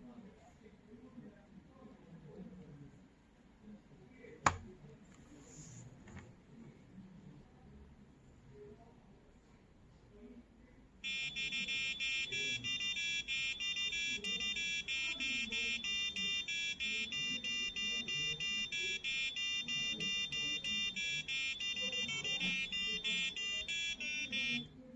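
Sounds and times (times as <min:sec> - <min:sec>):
alarm clock buzzer melody: 0:11.0 - 0:24.7.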